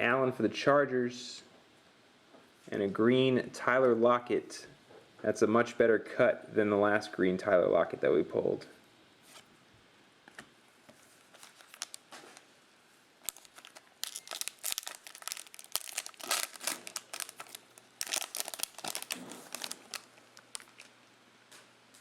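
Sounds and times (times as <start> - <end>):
plastic wrapper tearing and crinkling: 11.3 - 12.5, 13.2 - 21.0.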